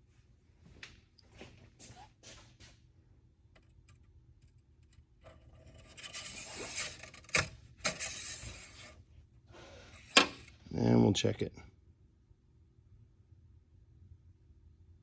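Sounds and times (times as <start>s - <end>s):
rustling and scraping: 5.2s - 10.6s.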